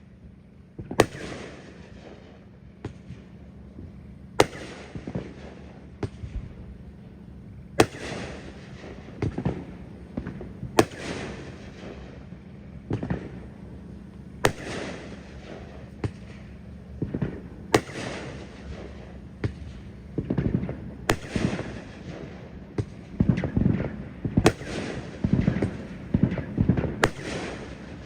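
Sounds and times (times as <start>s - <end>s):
small firework pops: 0.8s - 2.2s, 4.4s - 6.5s, 7.8s - 12.0s, 12.9s - 13.4s, 14.1s - 27.9s
firework bursts: 14.3s - 28.0s.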